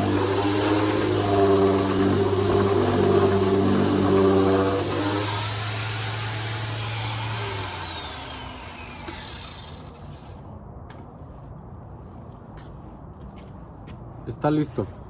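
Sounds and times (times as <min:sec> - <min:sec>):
electric sander spinning down: 0:00.0 - 0:10.2.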